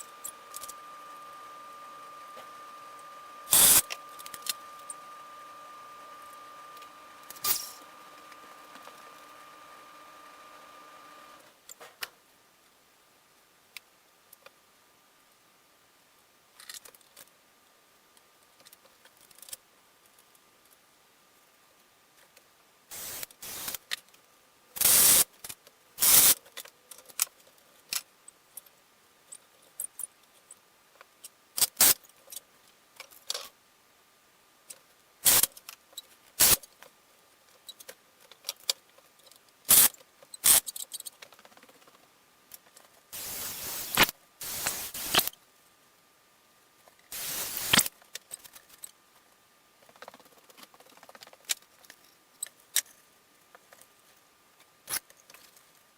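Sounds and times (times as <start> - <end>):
tool clicks and clatter: 0.0 - 1.2, 2.3 - 5.0, 5.9 - 9.5, 37.8 - 45.4, 47.1 - 49.0.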